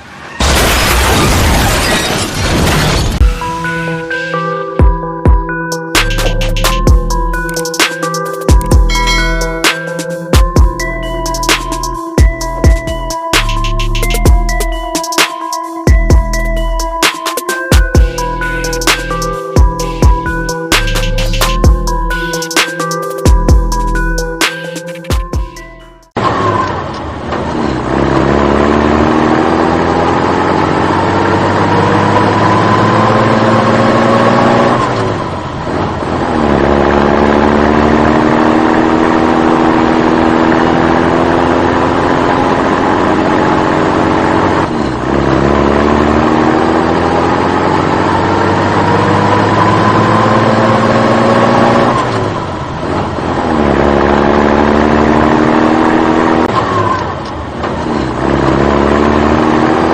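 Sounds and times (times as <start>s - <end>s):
vehicle engine accelerating: 26.1s - 59.9s.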